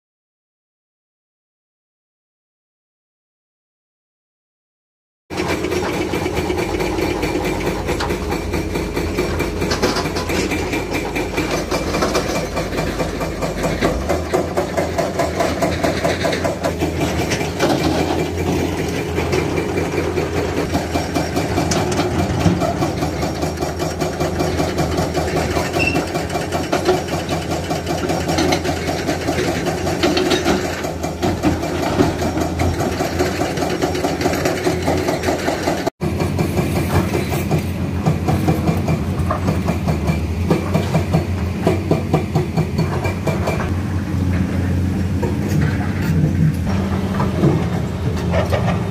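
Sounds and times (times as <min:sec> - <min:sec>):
excavator diesel engine running: 0:05.3 - 0:48.9
short knocks and clanks: 0:05.4 - 0:43.7.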